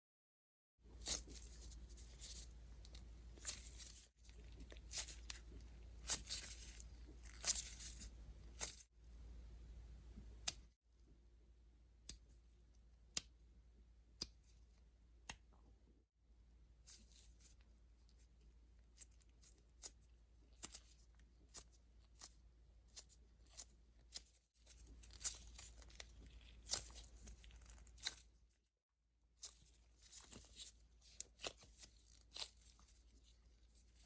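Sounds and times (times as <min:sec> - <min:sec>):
squishy toy squishing: 0:00.9 - 0:08.8.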